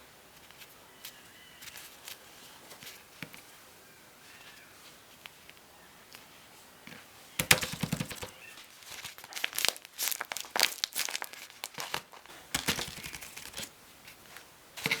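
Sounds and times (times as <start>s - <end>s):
plastic crinkling by hand: 7.4s - 15.0s.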